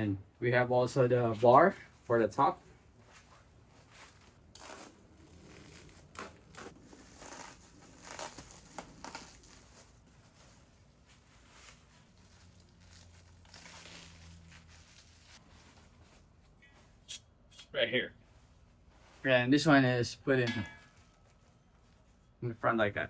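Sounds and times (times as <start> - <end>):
plastic wrap crinkling: 3.0 - 15.6.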